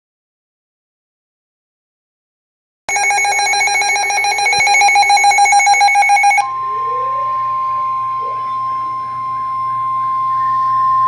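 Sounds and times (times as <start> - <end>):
warbling digital header tones: 2.9 - 6.5
high-pitched warning alarm tone: 2.9 - 6.7.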